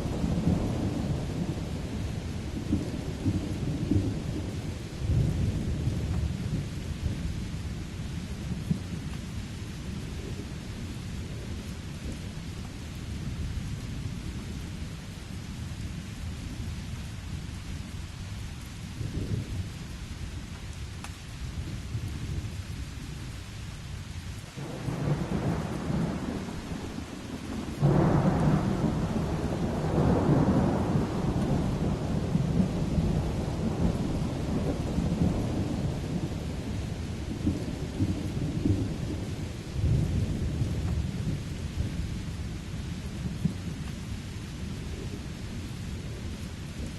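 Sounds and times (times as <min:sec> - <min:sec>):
steady rain: 0:00.0 - 0:46.9
thunder rumbling: 0:24.6 - 0:46.9.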